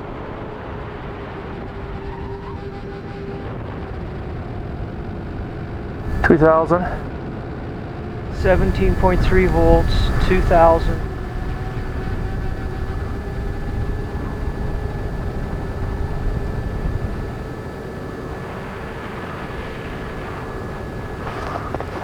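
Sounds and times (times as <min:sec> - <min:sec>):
faint electronic hum: 0:06.0 - 0:07.1, 0:08.3 - 0:22.0
wind buffeting microphone: 0:06.0 - 0:07.1, 0:08.3 - 0:22.0.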